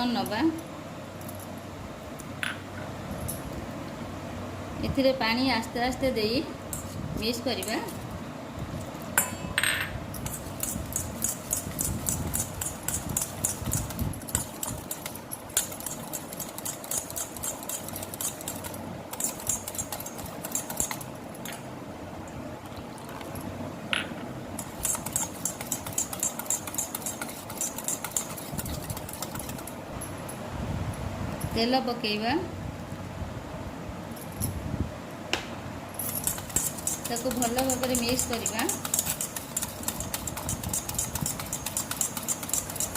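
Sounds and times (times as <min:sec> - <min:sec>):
batter stirred in a bowl: 0:10.2 - 0:21.2, 0:24.6 - 0:29.8, 0:36.2 - 0:42.9.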